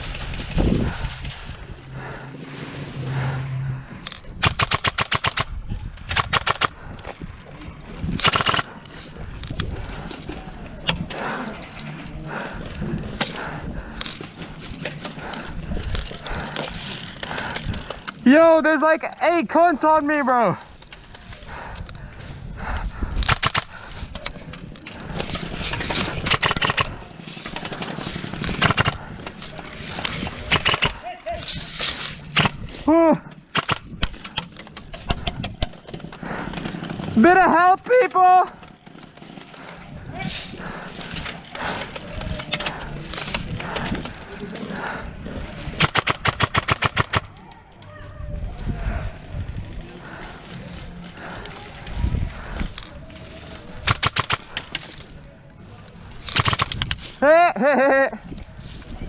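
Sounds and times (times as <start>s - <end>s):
airsoft guns firing: 4.4s - 6.8s, 8.2s - 8.7s, 23.2s - 23.7s, 26.1s - 27.0s, 28.5s - 29.0s, 30.4s - 31.0s, 33.5s - 34.2s, 45.8s - 47.4s, 53.8s - 54.7s, 56.3s - 57.0s.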